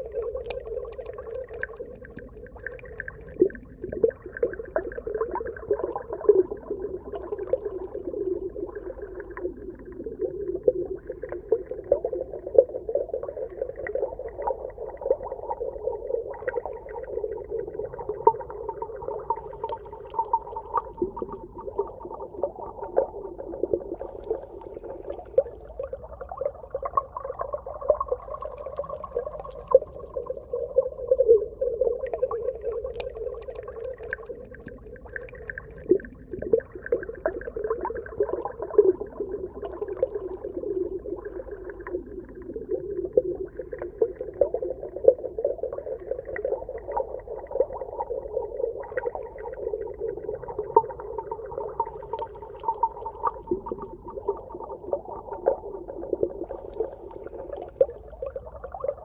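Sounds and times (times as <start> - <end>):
small crackles: 32.1 - 39.1.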